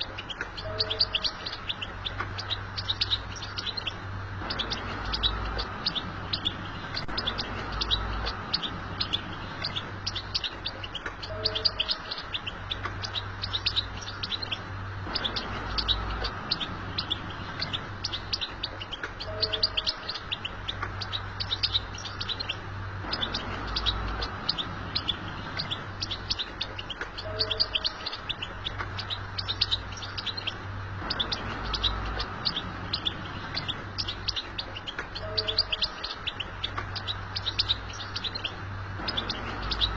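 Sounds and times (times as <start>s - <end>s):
bird twittering: 0.0s - 39.9s.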